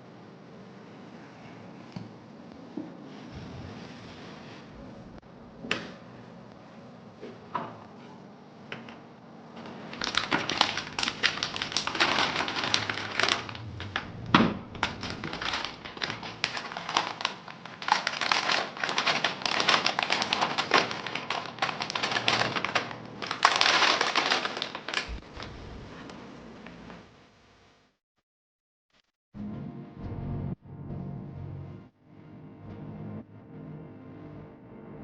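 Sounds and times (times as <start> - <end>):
packaging crinkling and rustling: 9.6 - 14.1, 14.7 - 25.6.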